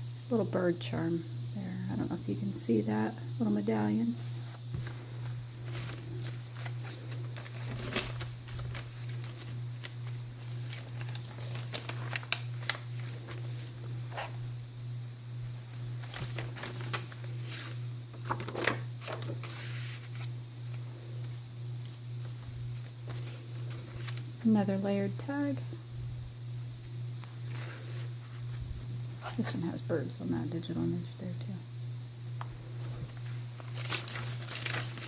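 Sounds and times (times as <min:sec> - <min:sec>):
steady low hum: 0:00.0 - 0:35.0
paper pages rustling: 0:04.2 - 0:14.5, 0:15.4 - 0:24.4, 0:26.6 - 0:29.6, 0:32.7 - 0:35.0.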